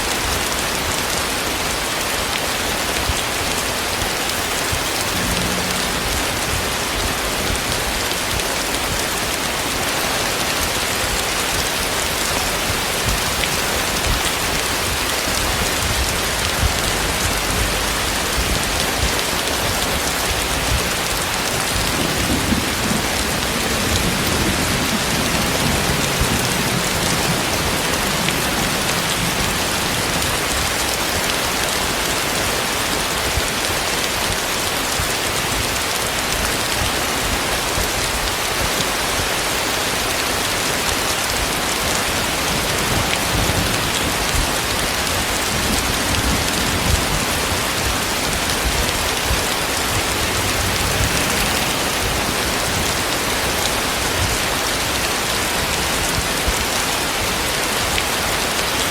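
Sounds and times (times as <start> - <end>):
heavy rain hissing: 0.0 - 58.9
low rumble: 4.6 - 8.5, 14.0 - 30.6, 48.6 - 54.6.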